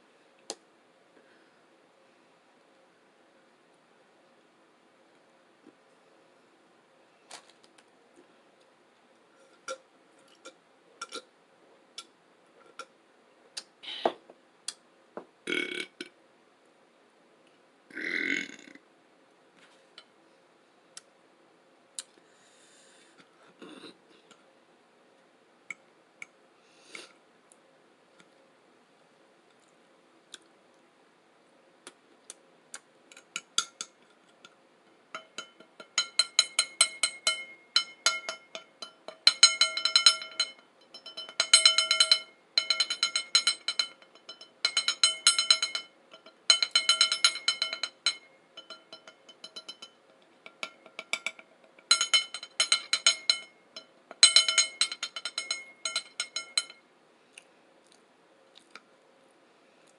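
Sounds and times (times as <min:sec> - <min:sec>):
cutlery clinking against a dish: 0:09.5 - 0:11.3, 0:33.1 - 0:34.5, 0:35.1 - 0:56.8.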